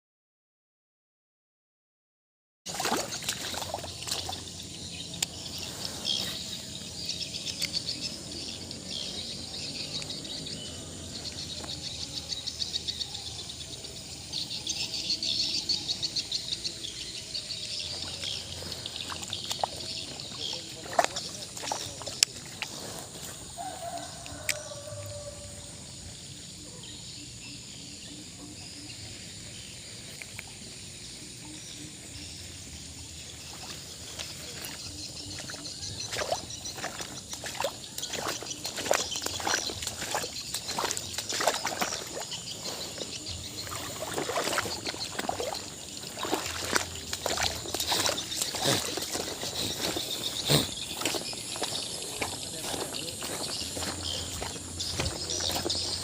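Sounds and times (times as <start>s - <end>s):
water sloshing and splashing: 2.7s - 13.8s, 15.9s - 25.0s, 33.2s - 56.0s.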